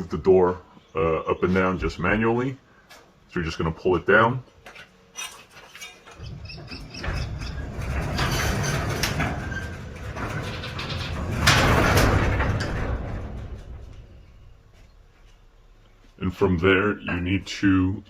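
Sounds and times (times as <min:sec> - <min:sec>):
door joints squeaking: 0:05.2 - 0:13.8
door rollers rumbling: 0:05.2 - 0:15.2.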